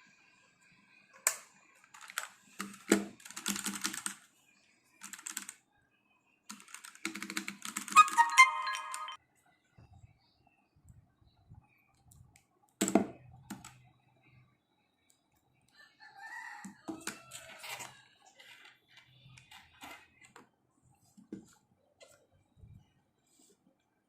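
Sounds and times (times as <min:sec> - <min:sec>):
mechanical keyboard clicks and knocks: 0:02.0 - 0:04.2, 0:05.0 - 0:05.5, 0:06.5 - 0:08.4
rooster crowing: 0:15.8 - 0:17.9.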